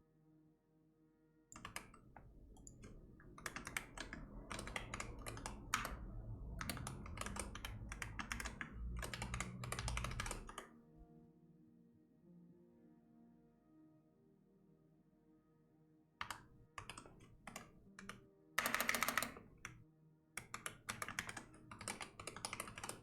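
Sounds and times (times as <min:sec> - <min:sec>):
typing on keyboard: 0:01.6 - 0:10.6, 0:16.2 - 0:19.8, 0:20.4 - 0:23.0.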